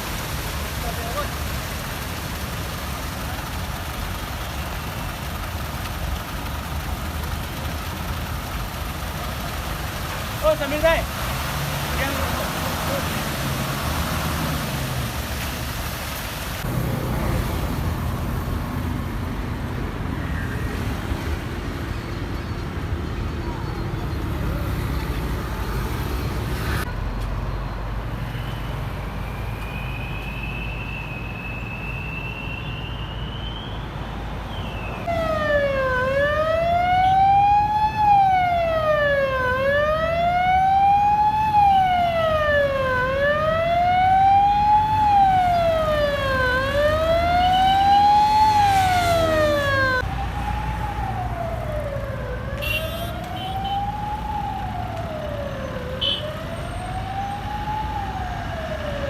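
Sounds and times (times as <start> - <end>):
road traffic rumble: 0.0 - 59.0
emergency siren wailing: 35.0 - 59.0.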